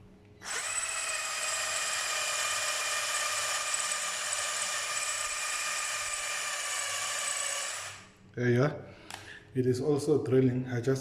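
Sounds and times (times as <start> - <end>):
cordless drill motor whine: 0.4 - 8.2.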